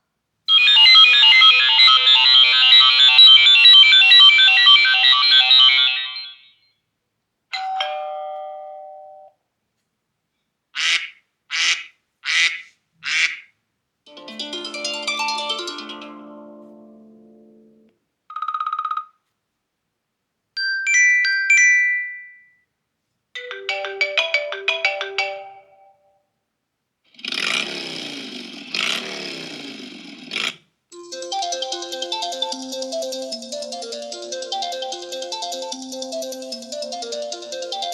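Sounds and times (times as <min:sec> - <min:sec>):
phone ringtone melody: 0:00.5 - 0:06.6, 0:14.1 - 0:17.6, 0:23.4 - 0:26.1, 0:30.9 - 0:37.9
quick run of plucked notes: 0:14.1 - 0:17.9.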